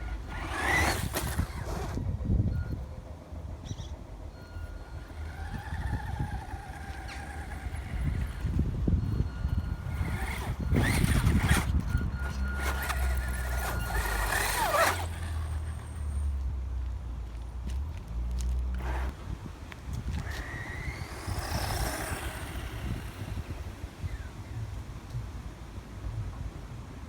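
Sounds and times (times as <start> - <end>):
tyres crunching over ground: 0.0 - 2.1, 4.7 - 24.2
rc car motor whining: 0.0 - 2.8, 3.4 - 16.4, 18.7 - 24.8.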